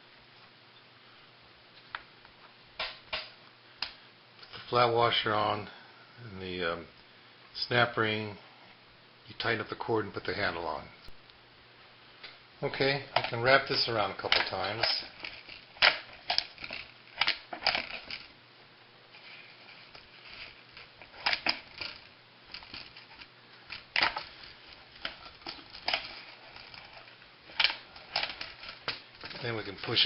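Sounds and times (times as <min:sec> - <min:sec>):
light clicks and knocks of parts: 0:12.2 - 0:18.3, 0:19.2 - 0:30.0.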